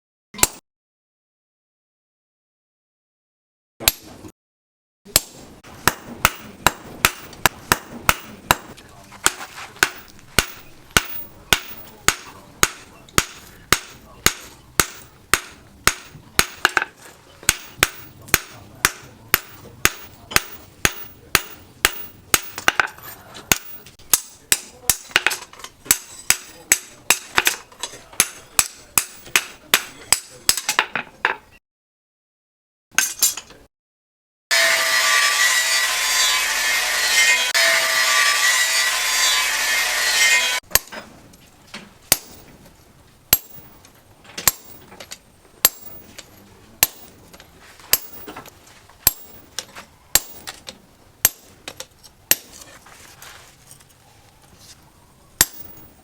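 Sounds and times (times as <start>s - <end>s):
hammer blows on steel: 5.1s - 22.9s
power tool grinding metal: 34.5s - 40.6s.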